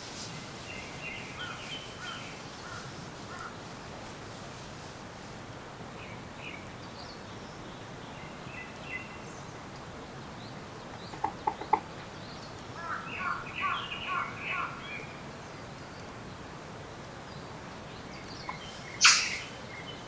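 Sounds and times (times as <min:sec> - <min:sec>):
background hiss: 0:00.0 - 0:20.0
forest birds chirping: 0:00.4 - 0:03.9, 0:05.9 - 0:20.0.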